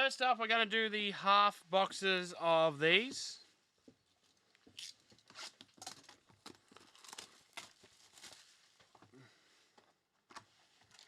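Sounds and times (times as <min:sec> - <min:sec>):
card packaging crinkling and tearing: 0:04.8 - 0:08.6.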